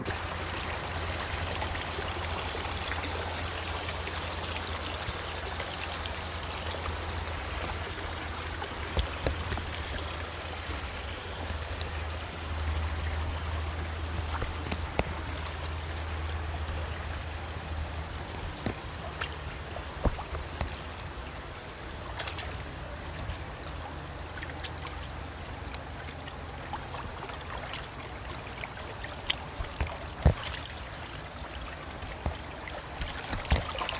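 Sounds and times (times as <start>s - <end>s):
river water rushing: 0.0s - 33.9s
short clicks or splashes: 24.3s - 33.9s.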